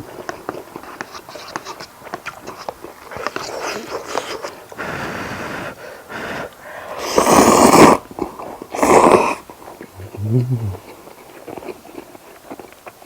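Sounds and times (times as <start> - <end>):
chewing with wet clicks: 0.0 - 4.8, 8.0 - 13.0
loud noisy breath: 4.8 - 8.0.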